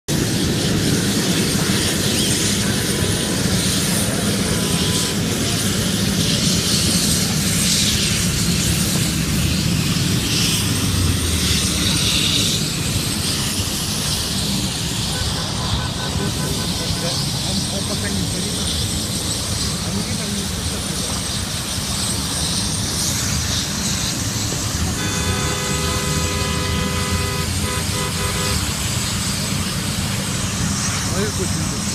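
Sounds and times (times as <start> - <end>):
large fire rumbling and hissing: 0.1 - 31.9
low street noise: 0.1 - 31.9
two-tone car horn: 4.4 - 5.4, 15.0 - 17.1, 24.8 - 28.8.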